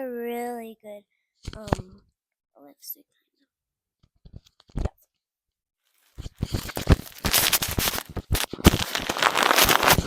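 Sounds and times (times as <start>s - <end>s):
plastic packaging crinkling: 6.0s - 10.0s.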